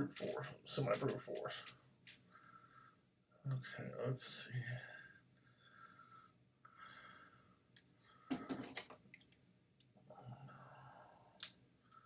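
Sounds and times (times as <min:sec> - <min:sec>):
scissor blades clicking on plastic: 0:11.3 - 0:11.5.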